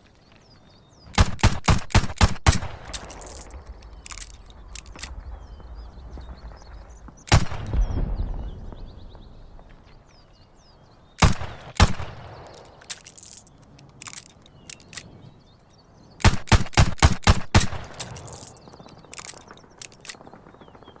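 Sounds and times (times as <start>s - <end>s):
metallic clicks and clinks: 2.9s - 5.2s, 12.4s - 15.1s, 17.6s - 20.2s.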